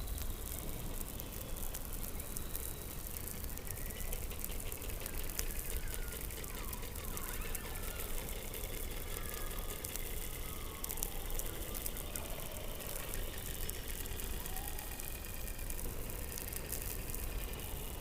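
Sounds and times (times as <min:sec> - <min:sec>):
faint chirping sweeps: 0:00.0 - 0:08.4
faint crackling clicks: 0:00.0 - 0:18.0
underwater noise: 0:00.0 - 0:18.0.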